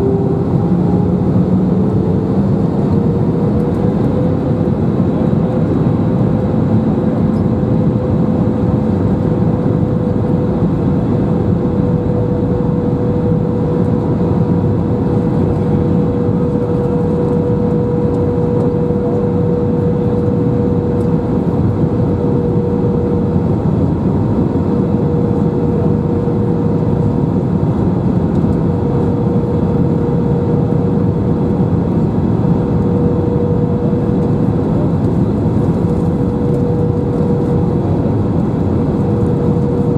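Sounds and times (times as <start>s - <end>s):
constant droning note: 0.0s - 39.9s
jet engine running: 0.0s - 39.9s.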